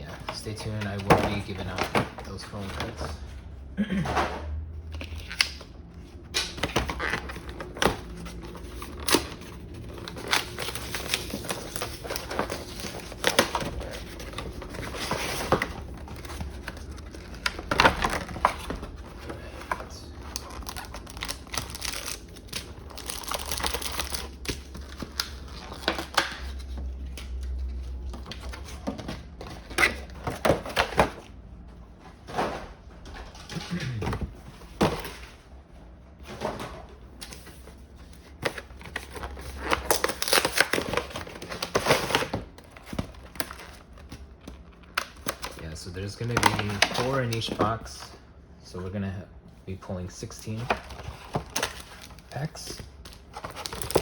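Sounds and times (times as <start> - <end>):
plastic and foil crinkling: 6.2 - 28.9, 38.2 - 47.8, 50.5 - 54.0.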